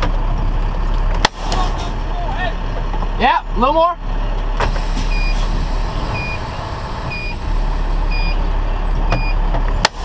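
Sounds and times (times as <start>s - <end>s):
truck engine rumble: 0.0s - 10.0s
reverse alarm beeping: 5.0s - 5.5s, 6.1s - 7.5s, 8.1s - 8.4s.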